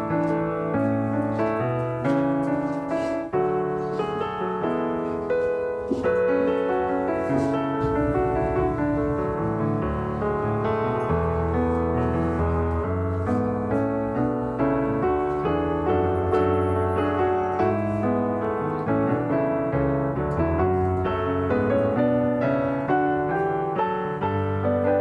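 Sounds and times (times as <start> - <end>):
gentle piano melody: 0.0 - 25.0
bass line: 7.8 - 11.7.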